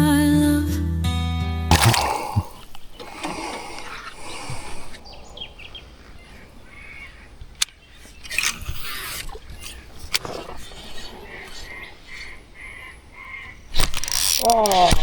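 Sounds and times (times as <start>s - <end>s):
sharp click: 1.7s - 3.9s
faint bird calls: 1.7s - 15.0s
open water ambience: 1.7s - 15.0s.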